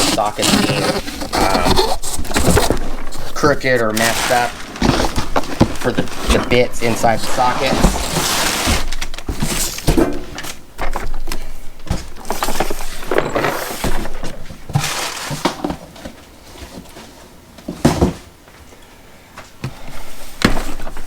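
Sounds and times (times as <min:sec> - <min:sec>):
packaging rustling: 0:00.0 - 0:16.9.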